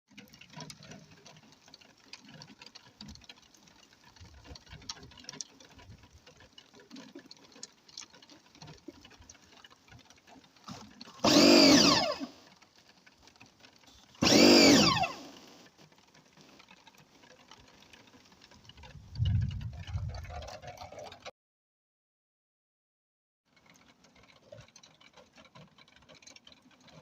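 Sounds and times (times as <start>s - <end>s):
motor whine: 11.2s - 12.4s, 14.2s - 15.6s.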